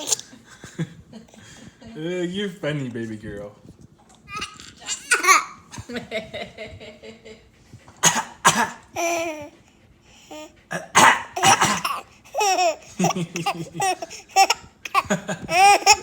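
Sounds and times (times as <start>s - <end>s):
baby girl giggling: 4.3s - 5.7s, 9.0s - 9.5s, 11.4s - 16.0s
person coughing: 8.0s - 8.8s, 10.7s - 12.0s.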